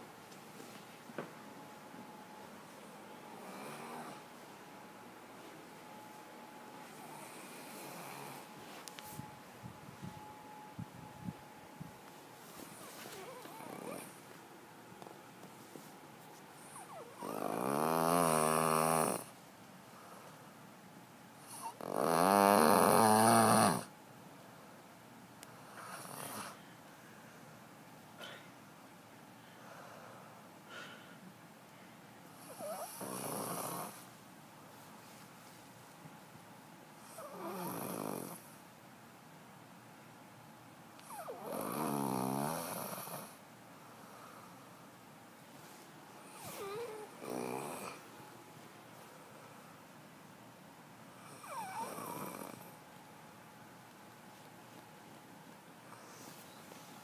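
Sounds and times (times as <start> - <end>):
quiet breaths: 2.0 - 22.0, 23.2 - 36.3, 40.8 - 50.2, 51.0 - 57.0
child snoring loudly: 13.2 - 14.1, 16.8 - 19.3, 21.5 - 23.9, 32.5 - 34.0, 37.2 - 38.4, 41.1 - 43.3, 46.4 - 48.0, 51.3 - 52.7
child breathing quietly: 29.4 - 32.1.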